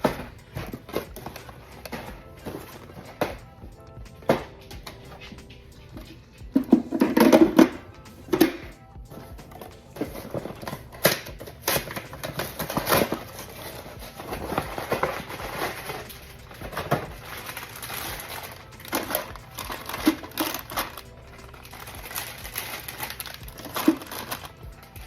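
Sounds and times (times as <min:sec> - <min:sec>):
items clicking and knocking: 0:00.0 - 0:25.0
plastic packaging crinkling: 0:09.5 - 0:25.0.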